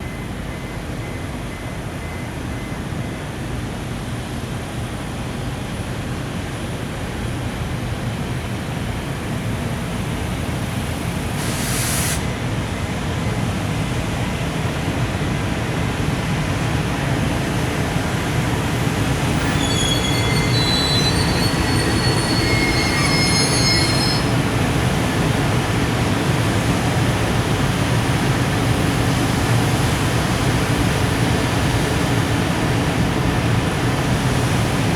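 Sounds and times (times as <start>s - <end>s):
freight train running: 0.0s - 34.9s
short hiss: 11.3s - 12.3s
train wheels squealing: 18.2s - 26.3s.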